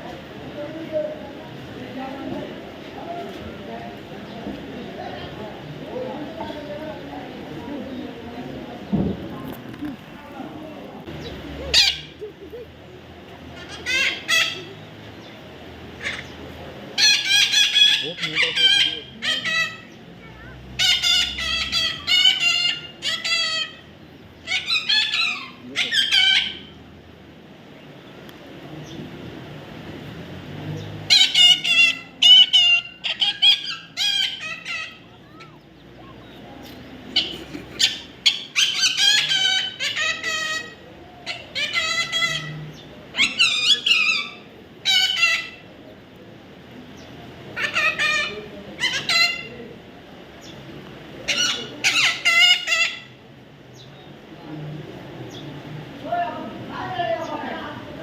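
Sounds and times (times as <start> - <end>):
parrot squawking: 11.6 - 12.3, 13.6 - 14.8, 16.0 - 16.3, 17.0 - 26.8, 31.1 - 35.6, 37.1 - 45.7, 47.6 - 49.6, 51.3 - 53.2.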